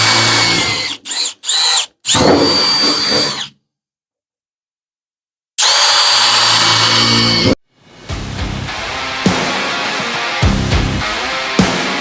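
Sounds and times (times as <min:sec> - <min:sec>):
electric drill boring through metal: 0:00.0 - 0:03.6, 0:05.6 - 0:07.6.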